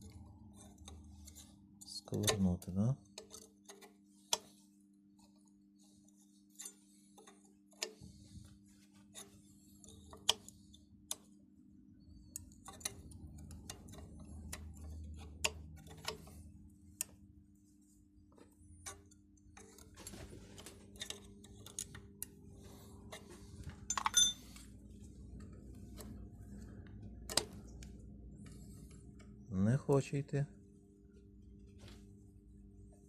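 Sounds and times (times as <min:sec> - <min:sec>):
metal tool clicking and scraping: 0:00.0 - 0:04.5, 0:06.1 - 0:08.1, 0:20.9 - 0:24.7
steady low hum: 0:00.0 - 0:33.0.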